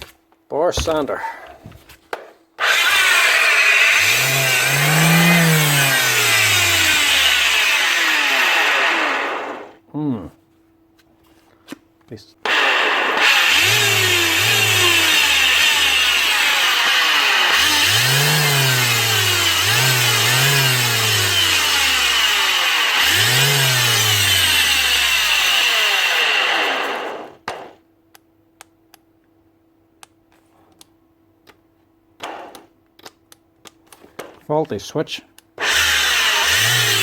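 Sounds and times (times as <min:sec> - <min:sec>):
orbital sander running: 0:02.6 - 0:09.8, 0:12.5 - 0:27.3, 0:35.6 - 0:37.0.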